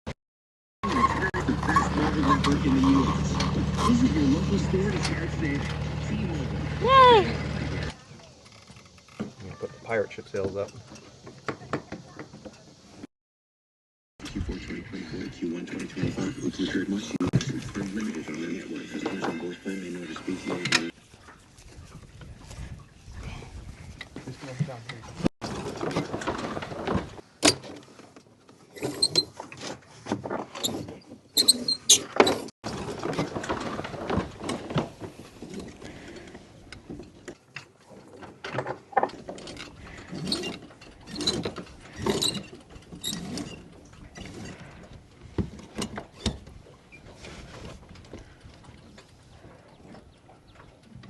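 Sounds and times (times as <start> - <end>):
sailboat rigging clicks and knocks: 7.9 - 13.1, 17.3 - 22.8, 23.9 - 51.0
sail canvas rustling: 39.8 - 48.4.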